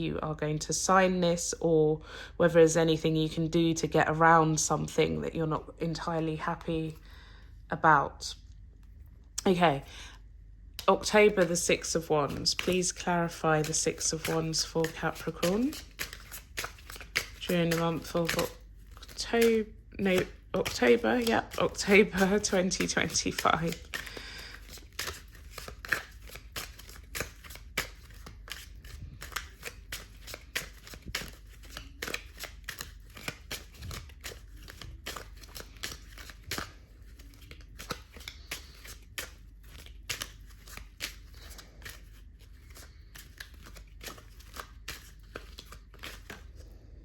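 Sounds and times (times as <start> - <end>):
cards being shuffled by hand: 10.8 - 47.0.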